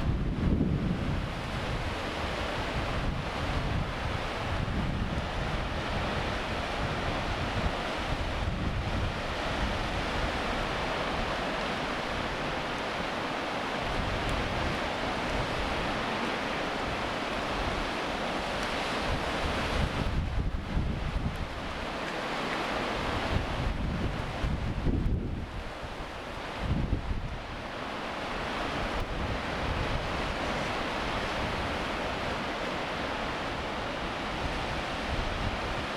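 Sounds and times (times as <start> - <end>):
wind buffeting microphone: 0.0 - 10.4, 19.0 - 21.8, 23.1 - 27.6
sea waves breaking: 0.0 - 35.9.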